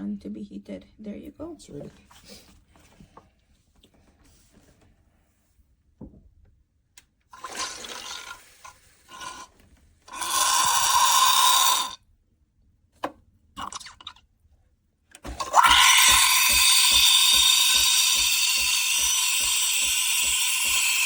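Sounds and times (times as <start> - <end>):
espresso steam wand hissing: 10.1 - 12.0, 15.6 - 21.0.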